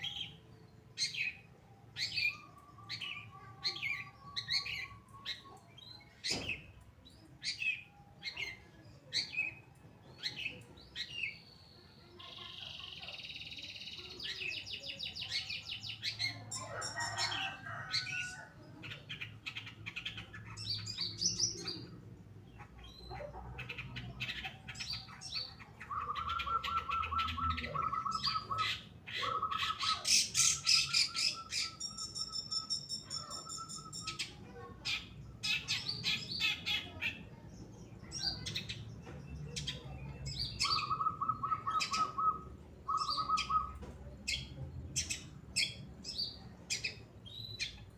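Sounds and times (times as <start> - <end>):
bird trills: 24.2 - 37.2, 39.6 - 45.8
bird singing sharp chirps: 29.5 - 34.4.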